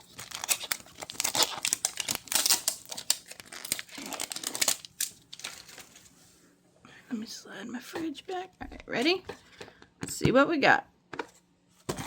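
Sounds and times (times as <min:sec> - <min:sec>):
plastic wrapping crinkling and tearing: 0:00.0 - 0:06.2.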